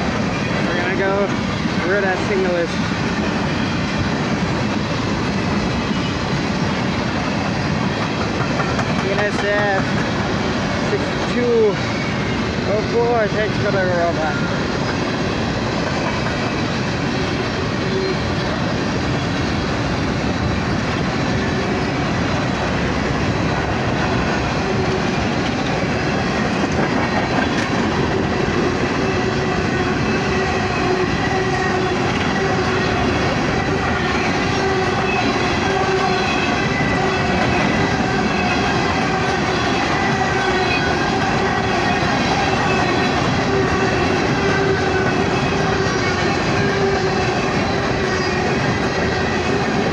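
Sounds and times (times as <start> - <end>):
freight train wheels clattering on rails: 0.0 - 49.9
wheels squealing: 16.0 - 49.9.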